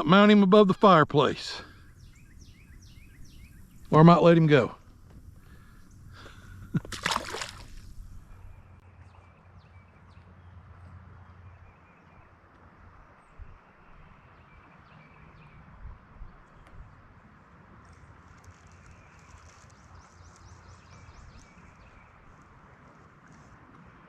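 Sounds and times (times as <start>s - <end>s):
fish splashing into water: 6.7s - 8.3s.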